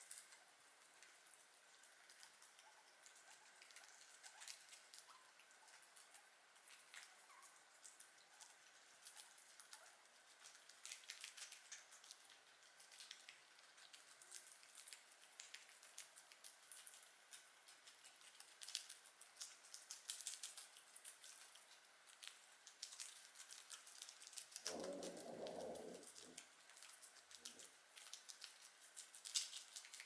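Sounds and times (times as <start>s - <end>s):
guinea pigs chewing: 0.0s - 30.0s.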